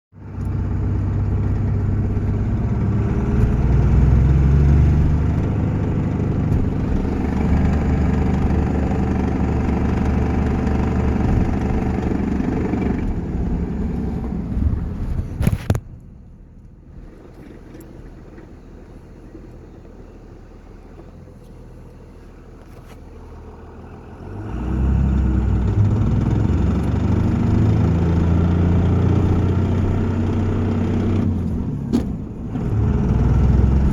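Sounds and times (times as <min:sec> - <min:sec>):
diesel engine rattling: 0:00.2 - 0:33.9.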